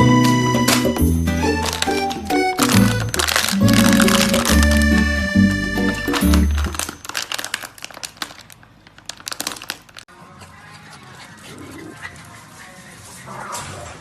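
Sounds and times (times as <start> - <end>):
sharp clicks and crinkles: 1.5 - 10.1.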